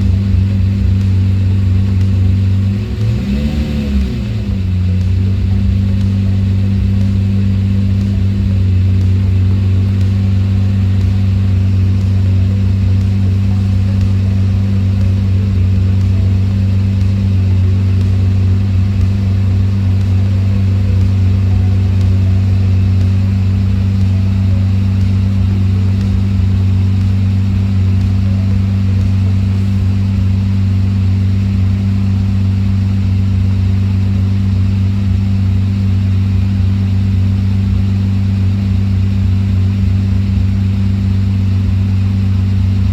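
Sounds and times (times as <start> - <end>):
car engine idling: 0.0 - 42.9.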